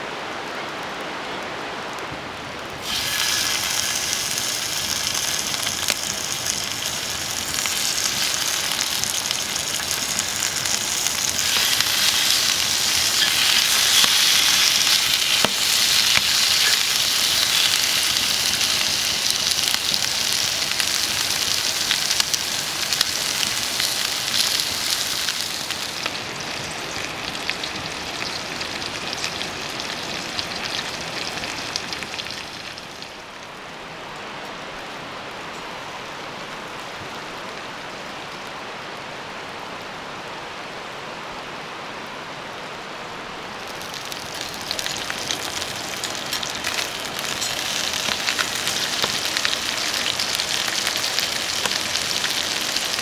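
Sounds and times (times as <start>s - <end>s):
steady rain falling: 0.0s - 53.0s.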